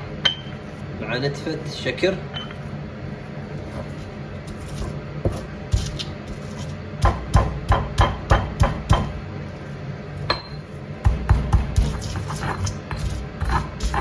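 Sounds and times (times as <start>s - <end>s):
pestle pounding in a mortar: 4.5s - 9.2s, 10.3s - 14.0s.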